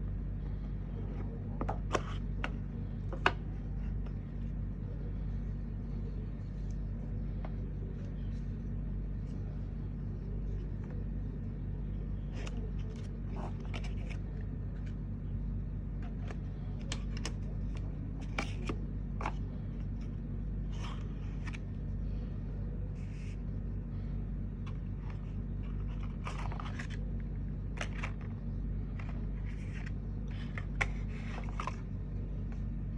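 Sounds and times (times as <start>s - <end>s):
low electrical hum: 0.0s - 32.9s
box being handled clicks and rustles: 24.6s - 32.7s.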